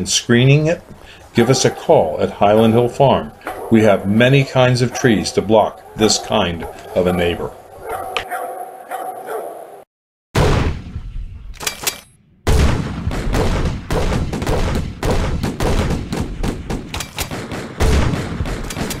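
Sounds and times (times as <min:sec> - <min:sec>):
loud gunshot bang: 0:10.4 - 0:11.3, 0:12.5 - 0:19.0
rapid gunfire barrage: 0:12.5 - 0:19.0.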